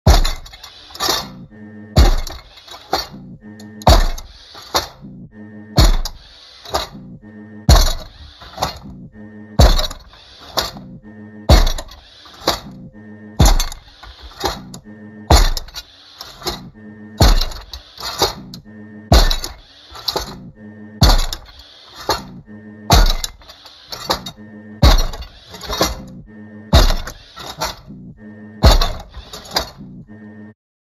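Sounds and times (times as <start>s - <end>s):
steady mechanical hum: 0.0s - 30.6s
metal clanks and clinks: 0.1s - 1.3s, 22.9s - 26.0s, 28.6s - 29.8s
heavy metallic thud: 0.1s - 1.4s, 2.0s - 5.1s, 5.8s - 7.0s, 7.7s - 9.0s, 9.6s - 10.9s, 11.5s - 12.8s, 13.4s - 15.8s, 16.4s - 20.4s, 21.0s - 27.9s, 28.6s - 29.8s.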